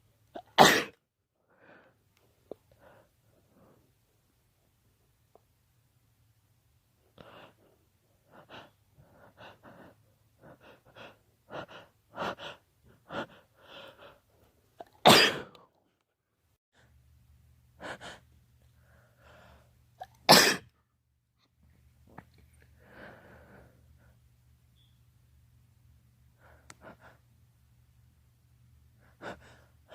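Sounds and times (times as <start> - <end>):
man sneezing loudly: 0.4 - 0.9, 15.0 - 15.5, 20.3 - 20.7
man breathing: 22.8 - 24.0.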